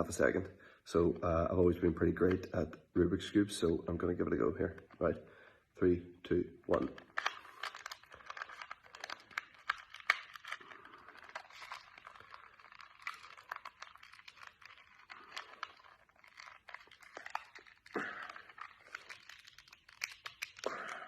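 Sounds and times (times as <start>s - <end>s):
puzzle cube clicking: 6.6s - 21.0s.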